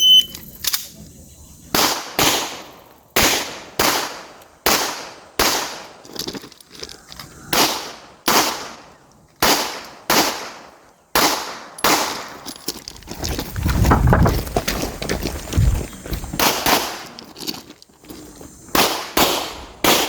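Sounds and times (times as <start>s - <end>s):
pistol shots: 1.7s - 6.0s, 7.5s - 12.4s, 18.7s - 20.0s.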